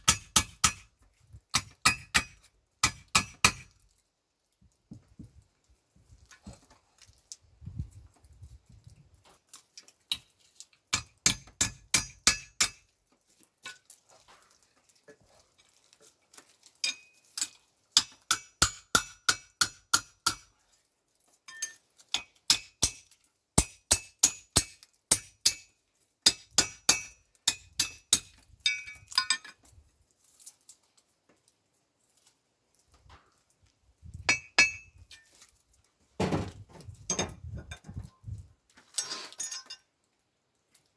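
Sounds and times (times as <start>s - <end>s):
hammer striking steel on anvil: 0.0s - 0.9s, 1.6s - 3.6s, 11.0s - 12.8s, 16.9s - 20.5s, 21.6s - 23.0s, 23.6s - 25.7s, 26.3s - 29.0s, 34.3s - 34.9s.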